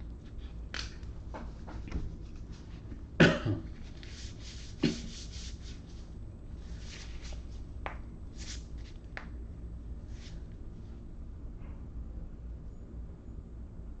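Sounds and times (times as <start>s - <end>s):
soft rustling and rubbing: 0.2s - 3.1s, 3.7s - 9.4s, 10.0s - 11.0s.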